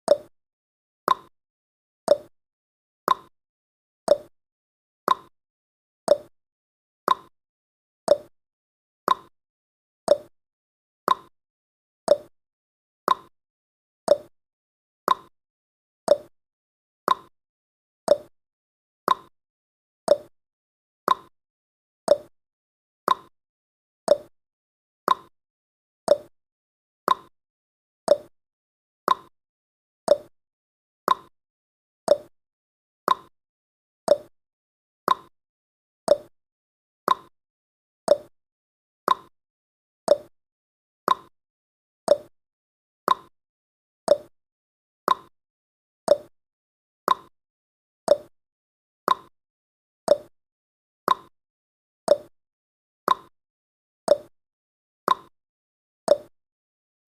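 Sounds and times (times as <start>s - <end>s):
timer ticking: 0.1s - 0.3s, 1.1s - 1.3s, 2.1s - 2.3s, 3.1s - 3.3s, 4.1s - 4.3s, 5.1s - 5.3s, 6.1s - 6.3s, 7.1s - 7.3s, 8.1s - 8.3s, 9.1s - 9.3s, 10.1s - 10.3s, 11.1s - 11.3s, 12.1s - 12.3s, 13.1s - 13.3s, 14.1s - 14.3s, 16.1s - 16.3s, 17.1s - 17.3s, 18.1s - 18.3s, 19.1s - 19.3s, 20.1s - 20.3s, 21.1s - 21.3s, 22.1s - 22.3s, 23.1s - 23.3s, 24.1s - 24.3s, 26.1s - 26.3s, 28.1s - 28.3s, 30.1s - 30.3s, 32.1s - 32.3s, 34.1s - 34.3s, 36.1s - 36.3s, 37.1s - 37.3s, 38.1s - 38.3s, 39.1s - 39.3s, 40.1s - 40.3s, 42.1s - 42.3s, 44.1s - 44.3s, 46.1s - 46.3s, 48.1s - 48.3s, 50.1s - 50.3s, 52.1s - 52.3s, 54.1s - 54.3s, 56.1s - 56.3s.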